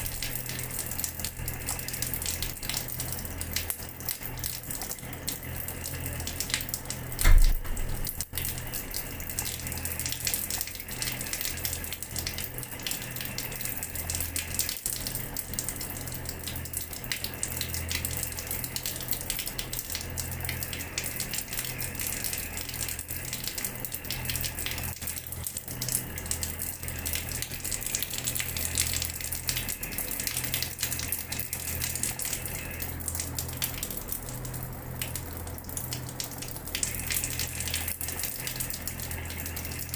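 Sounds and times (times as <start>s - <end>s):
tap water splashing on floor: 6.5s - 8.6s
low thump: 7.2s - 7.8s.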